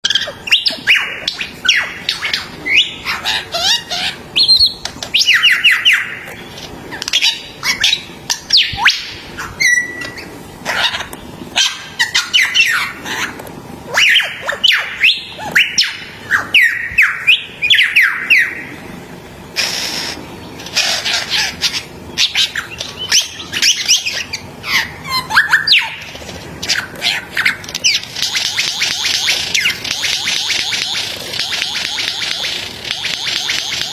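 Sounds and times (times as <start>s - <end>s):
bird singing whistles and chirps: 0.0s - 6.3s, 7.0s - 10.3s, 13.9s - 18.7s, 22.2s - 26.0s.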